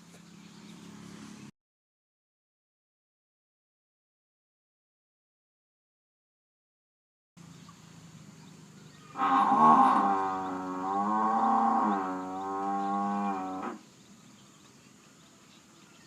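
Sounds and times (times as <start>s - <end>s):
buffalo bellowing: 9.0s - 13.8s.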